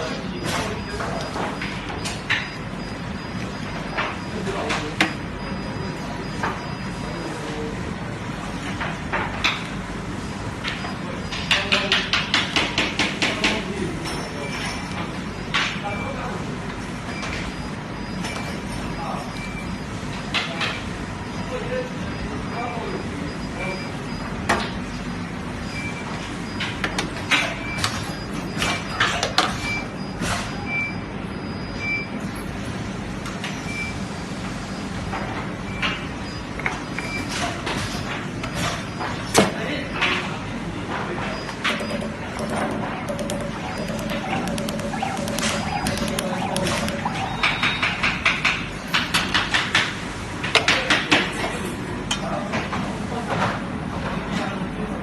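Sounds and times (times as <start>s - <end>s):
short high beeps: 41.4s - 48.0s
welding machine humming: 41.6s - 48.0s.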